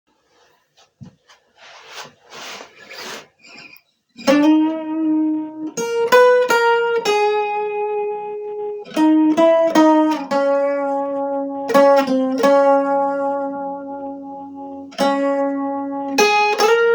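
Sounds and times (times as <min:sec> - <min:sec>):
soft rustling: 0:00.1 - 0:03.8
plucked guitar-like chords: 0:04.2 - 0:16.9.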